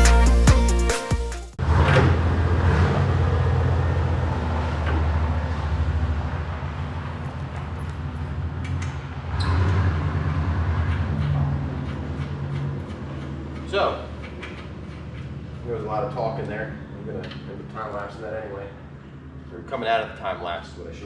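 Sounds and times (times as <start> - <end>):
electronic music: 0.0 - 1.6.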